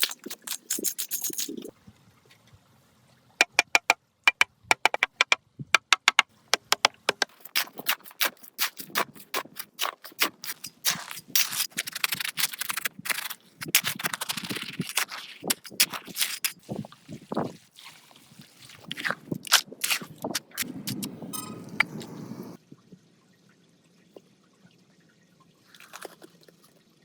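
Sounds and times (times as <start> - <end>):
sharp taps and clicks: 3.4 - 8.0.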